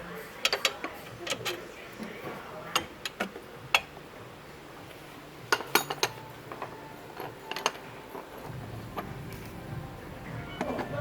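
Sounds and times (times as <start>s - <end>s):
metal tools clinking: 5.5s - 9.5s.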